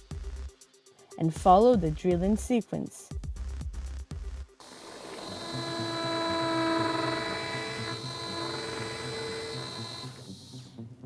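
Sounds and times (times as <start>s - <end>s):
surgical drill motor whine: 4.6s - 10.8s.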